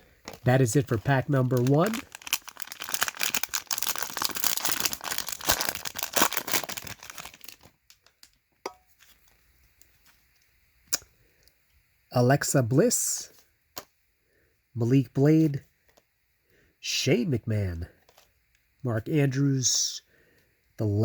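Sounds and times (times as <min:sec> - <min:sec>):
plastic wrapper tearing and crinkling: 0:00.2 - 0:08.4.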